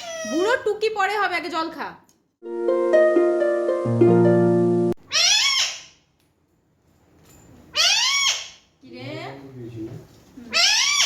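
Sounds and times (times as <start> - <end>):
parakeet call: 5.0 - 6.0, 7.8 - 8.6, 10.5 - 11.0.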